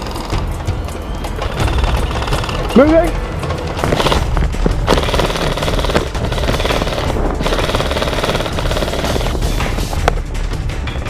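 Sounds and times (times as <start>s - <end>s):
background music: 0.0s - 11.0s
airsoft guns firing in bursts: 1.4s - 3.1s, 3.8s - 10.0s.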